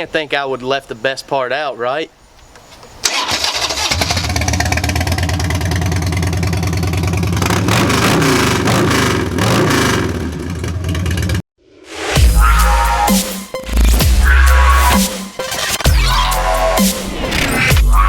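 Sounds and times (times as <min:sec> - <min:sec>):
motorcycle engine idling and revving: 0:03.6 - 0:11.5.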